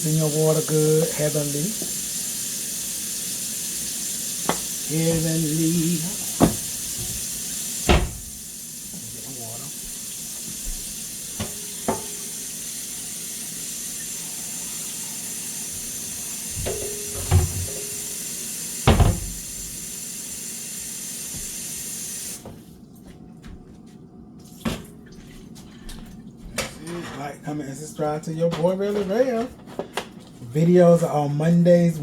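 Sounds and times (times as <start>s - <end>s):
tap running into a pot: 1.7s - 2.0s, 4.4s - 9.1s, 9.8s - 12.5s, 15.7s - 18.2s
pot knocking against sink: 4.4s - 8.4s, 10.7s - 12.4s, 16.5s - 18.1s, 18.9s - 19.8s.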